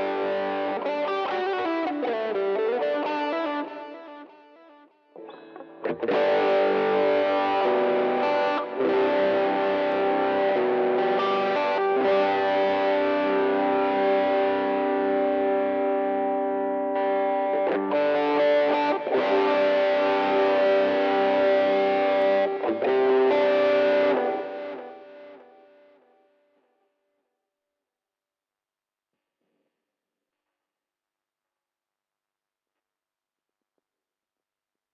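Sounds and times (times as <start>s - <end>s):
distorted electric guitar chords: 0.0s - 4.3s, 5.2s - 25.8s.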